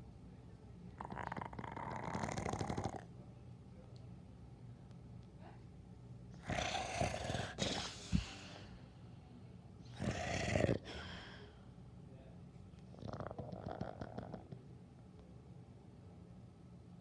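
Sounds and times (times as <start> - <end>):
dog snoring: 1.0 - 3.1, 6.4 - 8.6, 9.9 - 11.1, 12.9 - 14.6
dog breathing quietly: 6.6 - 8.8.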